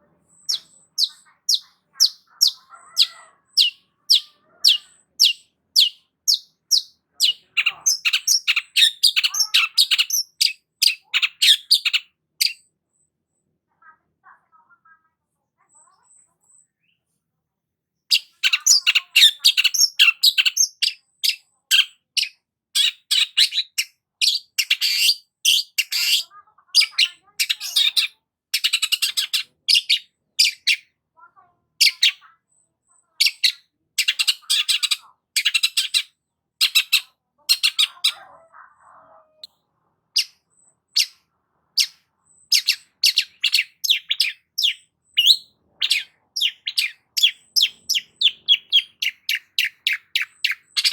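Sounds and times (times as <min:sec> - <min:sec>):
bird singing chattering notes: 0:00.3 - 0:12.6, 0:18.1 - 0:26.2, 0:41.8 - 0:50.9.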